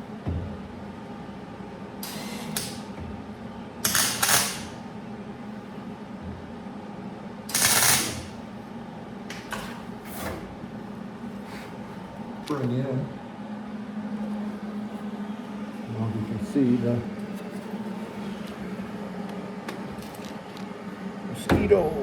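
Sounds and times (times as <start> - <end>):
shop machinery humming: 0.0 - 22.0
welding crackling bursts: 3.8 - 4.8, 7.5 - 8.3.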